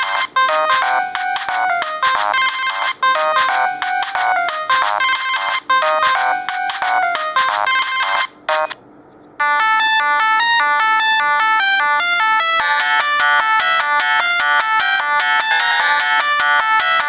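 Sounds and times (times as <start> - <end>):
polyphonic ringtones: 0.0 - 8.8.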